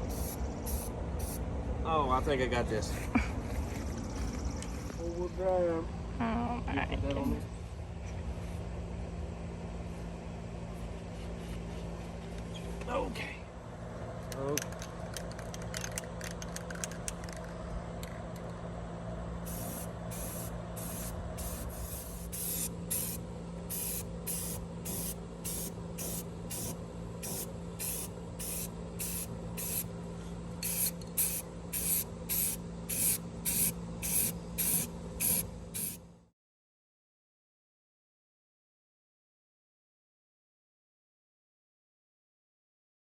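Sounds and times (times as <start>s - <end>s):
paint spray hissing bursts: 0.0s - 1.4s, 19.4s - 29.9s, 30.6s - 36.0s
steady low hum: 0.0s - 36.3s.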